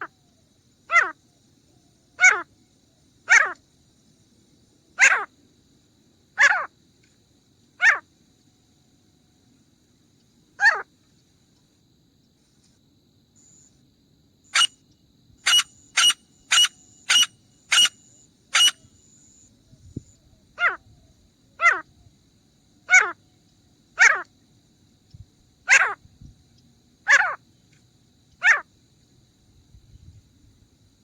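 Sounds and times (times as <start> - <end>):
francolin calling: 14.5 - 14.8, 15.4 - 19.5.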